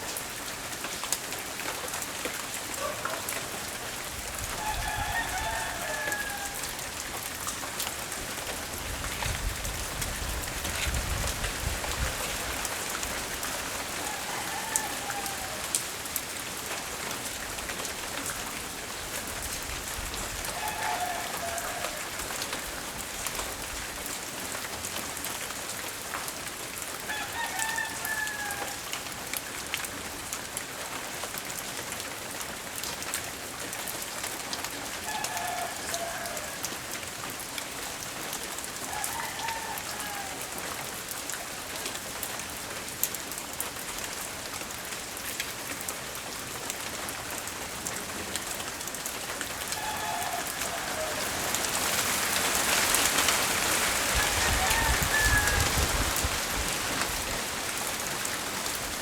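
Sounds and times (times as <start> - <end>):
rain falling: 0.0 - 59.0
rooster crowing faintly: 4.4 - 7.1, 13.8 - 15.9, 20.4 - 22.8, 27.1 - 29.0, 35.0 - 37.0, 38.8 - 40.8, 49.5 - 57.7.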